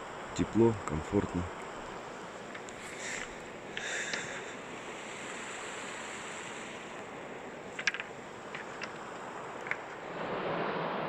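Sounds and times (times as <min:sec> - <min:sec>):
sharp ticks: 0:02.4 - 0:04.5, 0:07.7 - 0:10.0.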